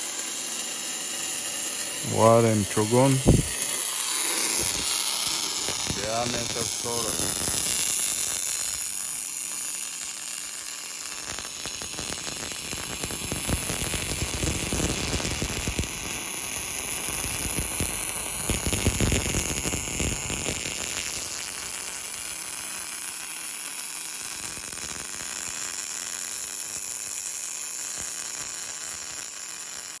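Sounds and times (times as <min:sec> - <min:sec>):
arc welding crackle and hiss: 0:00.0 - 0:30.0.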